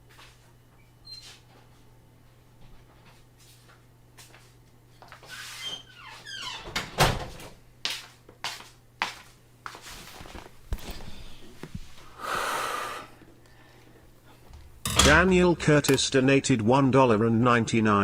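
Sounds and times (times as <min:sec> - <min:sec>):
squeak: 0:05.3 - 0:06.7.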